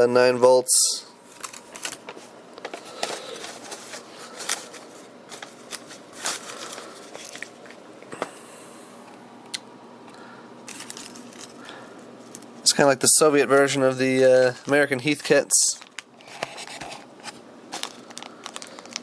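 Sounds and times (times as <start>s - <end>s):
paper and packaging crinkling: 1.3s - 7.8s, 10.7s - 12.7s, 14.4s - 19.0s.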